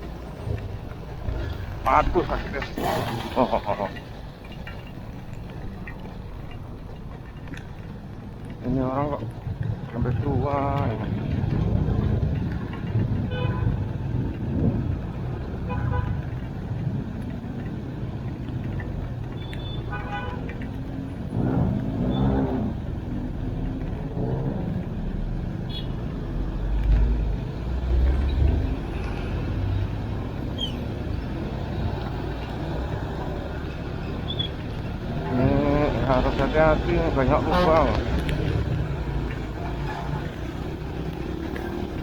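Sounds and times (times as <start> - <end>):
passing vehicle rumble: 0.0 - 19.4, 20.4 - 42.0
traffic on wet road: 0.0 - 42.0
car horn toots: 19.5 - 20.5.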